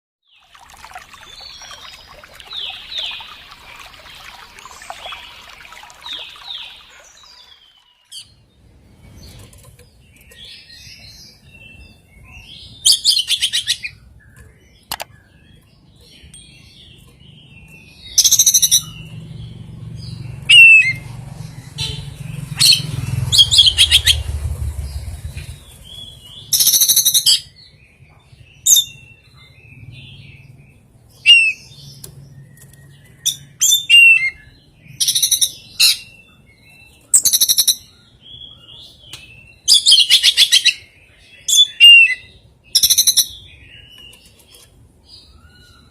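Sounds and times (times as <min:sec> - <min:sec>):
songbird singing: 0:00.2 - 0:45.9.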